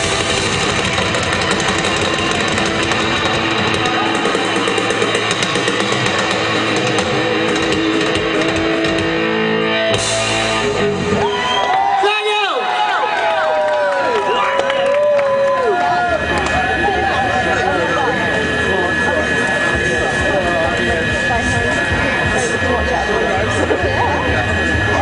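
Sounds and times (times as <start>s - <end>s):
drum kit: 0.0s - 11.6s
distorted electric guitar: 0.0s - 12.0s, 14.1s - 25.0s.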